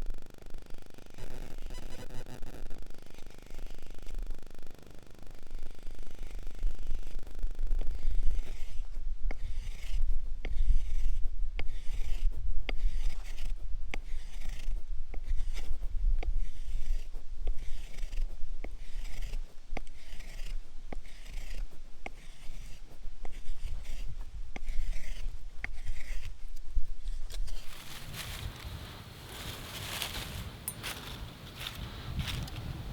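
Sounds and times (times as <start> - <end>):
steady low rumble: 26.4 - 32.9.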